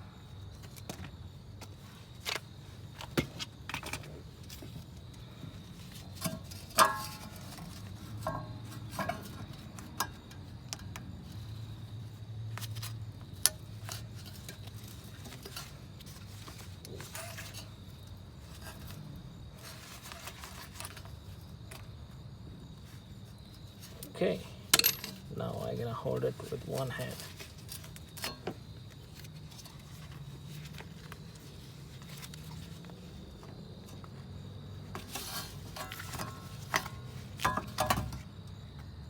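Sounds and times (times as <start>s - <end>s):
metal tools clinking: 24.0s - 25.6s.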